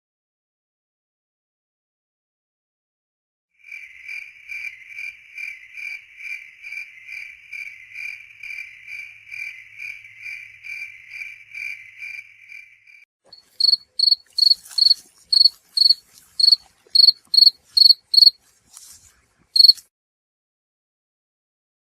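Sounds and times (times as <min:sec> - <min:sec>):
cricket chirping: 0:03.6 - 0:18.4, 0:19.6 - 0:19.8
higher-pitched cricket chirp: 0:03.6 - 0:18.4, 0:19.6 - 0:19.8.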